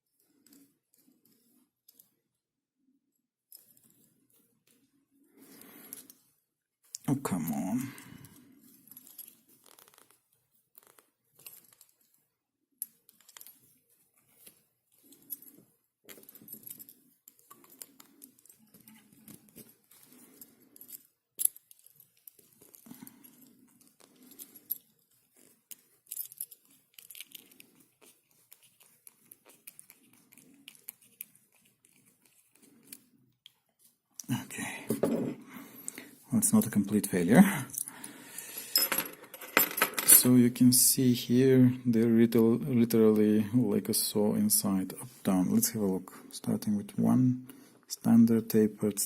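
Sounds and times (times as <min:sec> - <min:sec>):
padlock metal clicks and scraping: 0:15.1 - 0:27.6.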